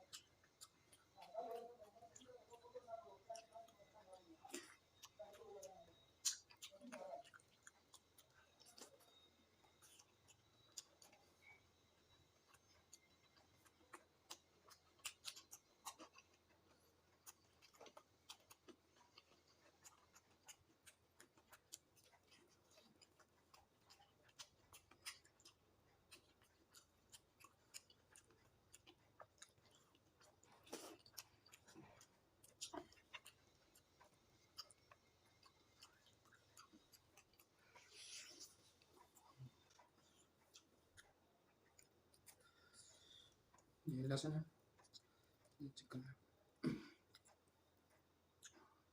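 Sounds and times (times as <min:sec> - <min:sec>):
person chewing food: 0:00.0 - 0:48.9.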